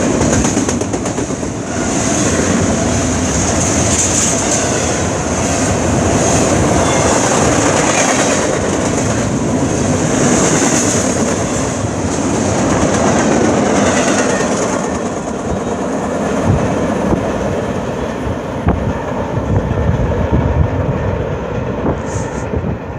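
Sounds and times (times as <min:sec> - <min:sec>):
train wheels rumbling on rails: 0:00.0 - 0:22.9
high wheel squeal: 0:06.3 - 0:07.7.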